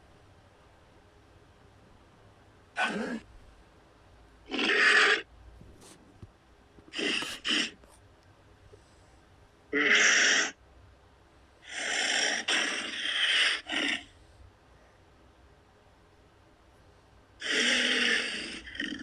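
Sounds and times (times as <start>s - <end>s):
rasping monster bursts: 2.8s - 3.2s, 4.5s - 5.2s, 6.9s - 7.8s, 9.8s - 10.6s, 11.6s - 14.1s, 17.4s - 19.0s.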